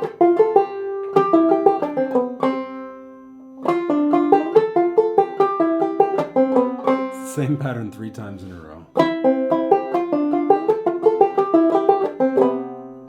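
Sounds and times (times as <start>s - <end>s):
banjo plucked notes: 0.0s - 13.0s.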